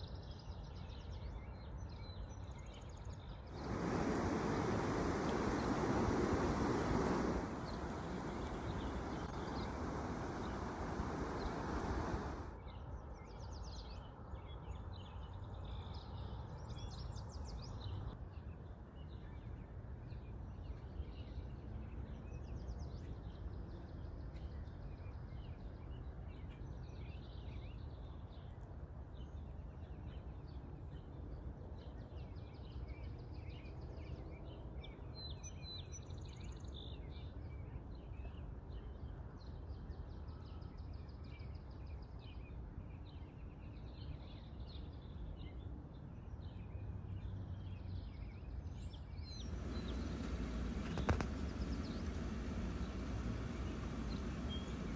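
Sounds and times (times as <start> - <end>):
small birds chirping: 3.0 - 12.5, 48.0 - 54.9
low background rumble: 3.5 - 12.6, 49.2 - 54.9.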